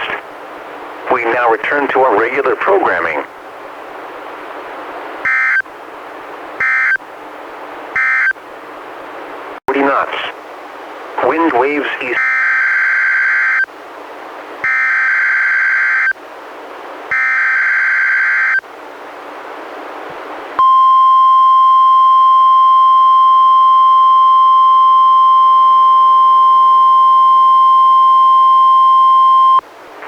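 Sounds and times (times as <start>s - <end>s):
steady warning alarm tone: 5.2s - 5.7s, 6.6s - 7.0s, 8.0s - 8.4s, 12.2s - 13.7s, 14.6s - 16.2s, 17.1s - 18.6s, 20.6s - 29.6s
buzzing digital tone bursts: 8.0s - 8.3s.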